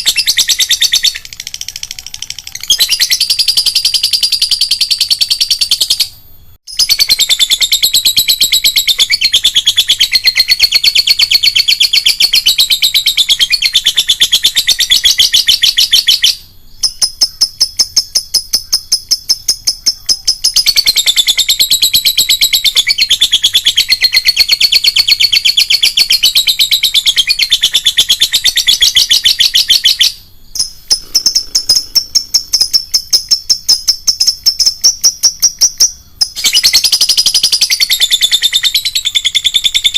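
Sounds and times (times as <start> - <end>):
lovebird chattering trill: 0.0 - 39.9.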